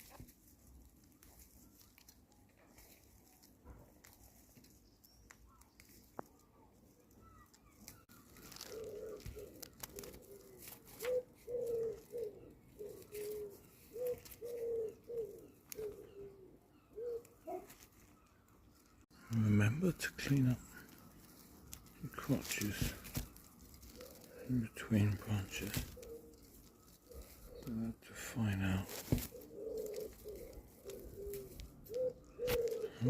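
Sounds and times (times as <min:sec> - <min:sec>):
dove cooing: 0:07.2 - 0:18.0, 0:19.3 - 0:33.0.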